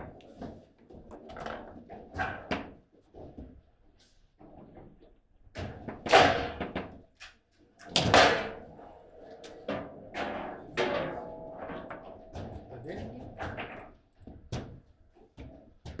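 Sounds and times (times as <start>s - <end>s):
foosball ball and rods knocking: 8.0s - 13.9s.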